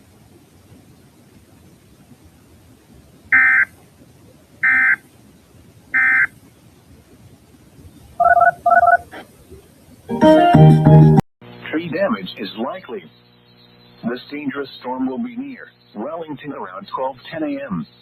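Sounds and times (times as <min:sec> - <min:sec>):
digital data tone bursts: 0:03.3 - 0:03.7, 0:04.6 - 0:05.0, 0:06.0 - 0:06.3, 0:08.2 - 0:09.1
two-tone beeps: 0:03.4 - 0:03.7, 0:04.6 - 0:05.0, 0:06.0 - 0:06.3.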